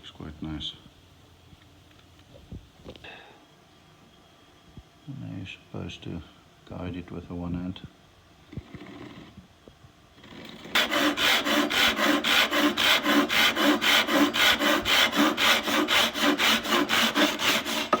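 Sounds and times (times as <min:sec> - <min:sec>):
hand saw cutting wood: 0:10.6 - 0:18.0.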